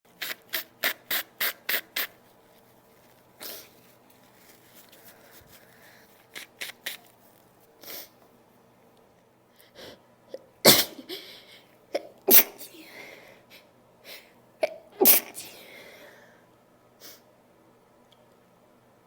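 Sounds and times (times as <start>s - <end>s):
woman puffing air through nose: 0.2s - 2.2s, 10.7s - 11.3s, 15.0s - 15.7s.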